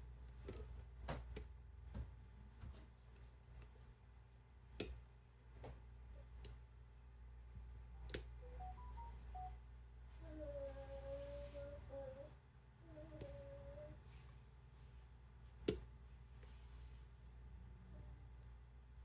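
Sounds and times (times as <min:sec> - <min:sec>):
person humming: 0:08.4 - 0:09.5, 0:10.2 - 0:14.0.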